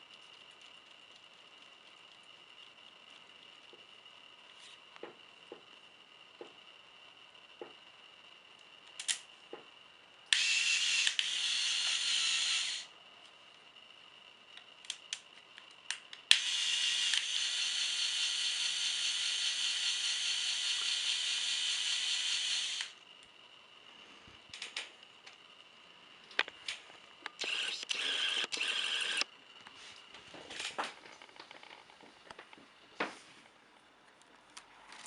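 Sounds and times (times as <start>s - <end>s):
small electric motor whirring: 10.3s - 13.0s, 15.8s - 23.1s, 27.2s - 29.3s.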